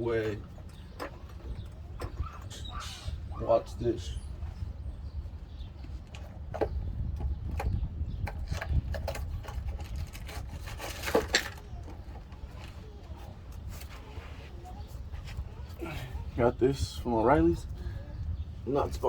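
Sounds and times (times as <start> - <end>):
tools and metal parts clicking: 7.6 - 12.2.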